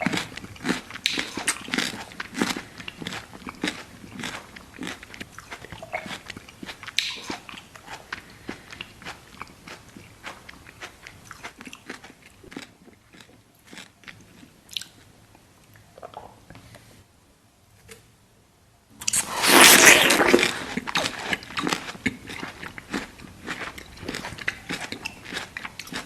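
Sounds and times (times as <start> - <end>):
person chewing food: 0.0 - 15.1, 19.0 - 26.0.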